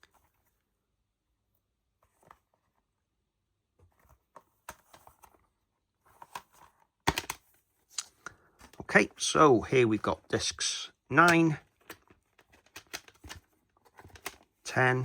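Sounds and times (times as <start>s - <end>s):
plastic case clicks and rustles: 6.1s - 8.9s, 11.2s - 14.6s.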